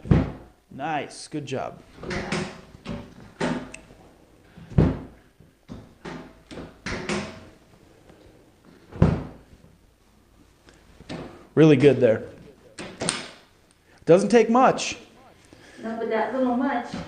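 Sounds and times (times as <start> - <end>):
table section dropping thunks: 0.0 - 0.5, 4.6 - 7.5, 8.9 - 9.5.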